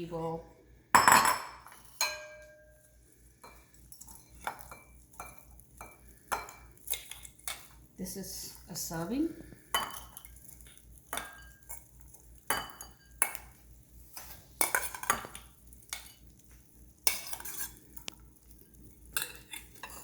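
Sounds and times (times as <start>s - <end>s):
clinks against dishes: 1.0s - 2.8s, 9.7s - 10.3s, 11.1s - 11.8s, 12.5s - 13.5s, 19.2s - 20.0s
spoon scraping a bowl: 9.4s - 16.5s, 17.1s - 18.1s, 19.1s - 20.0s.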